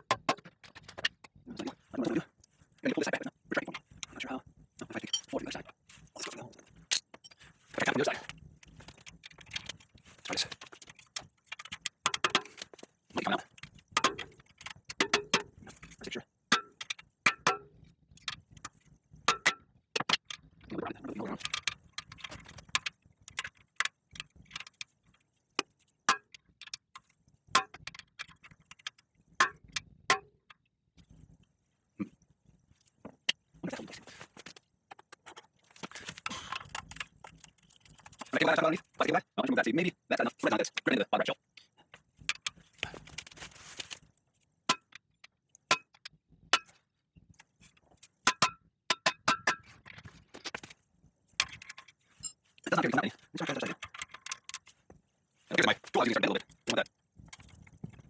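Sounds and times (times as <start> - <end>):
handling rustle: 42.0 - 44.4
metallic taps and clinks: 51.4 - 52.5.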